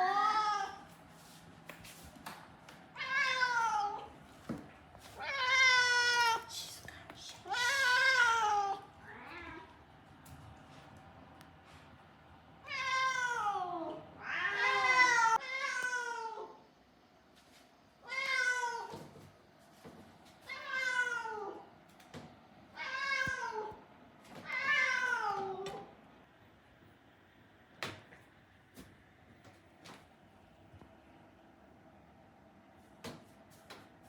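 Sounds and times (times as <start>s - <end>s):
cat meowing: 12.7s - 16.5s.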